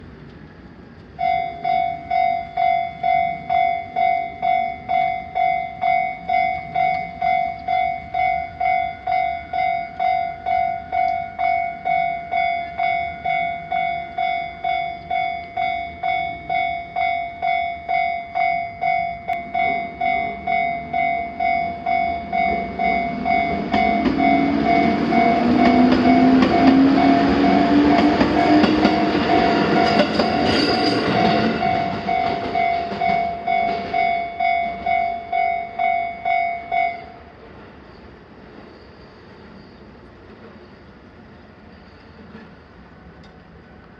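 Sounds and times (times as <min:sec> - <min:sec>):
approaching train whine: 0:00.0 - 0:43.9
level-crossing bell dinging: 0:01.2 - 0:37.3.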